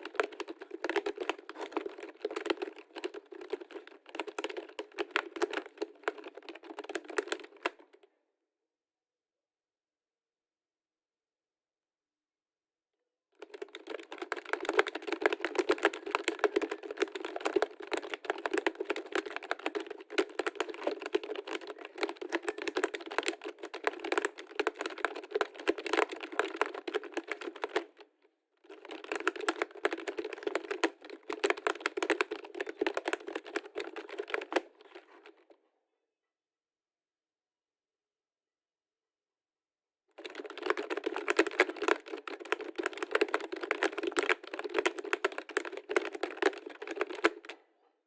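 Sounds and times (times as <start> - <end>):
fast typing on keyboard: 0.0 - 7.9, 13.4 - 28.0, 28.6 - 35.3, 40.2 - 47.6.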